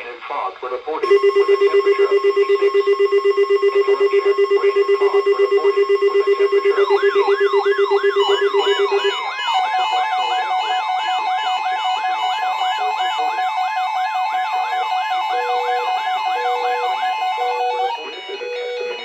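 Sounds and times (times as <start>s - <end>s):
short beeps: 1.0s - 13.6s
steady alert tone: 1.0s - 19.0s
warbling siren-like tone: 1.0s - 19.0s.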